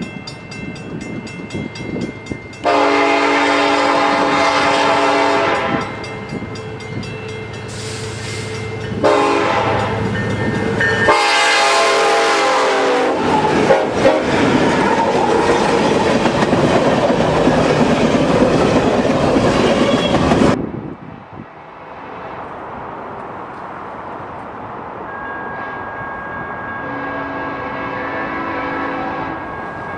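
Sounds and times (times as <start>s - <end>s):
train rumbling past: 0.0s - 29.9s
locomotive air horn blasts: 2.6s - 6.0s, 9.0s - 10.0s, 11.0s - 14.4s, 25.2s - 26.2s, 26.8s - 29.5s
wheels clattering on rails: 13.2s - 20.6s.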